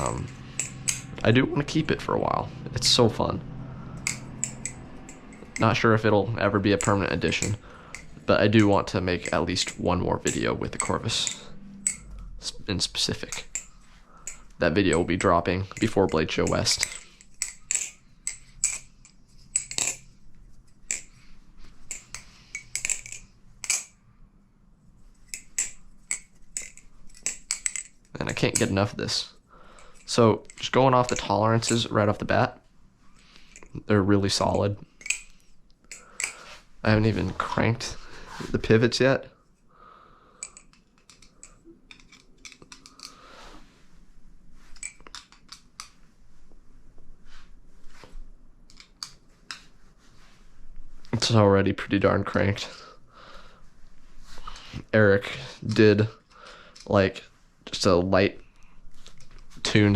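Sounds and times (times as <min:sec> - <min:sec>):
butterfly knife clacking: 0:04.0 - 0:05.7, 0:13.3 - 0:18.9.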